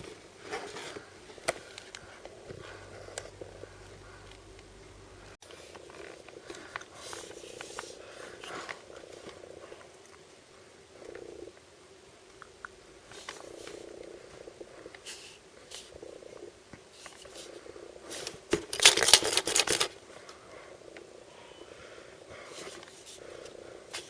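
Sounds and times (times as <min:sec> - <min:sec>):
plastic packaging crinkling: 0:18.6 - 0:20.0.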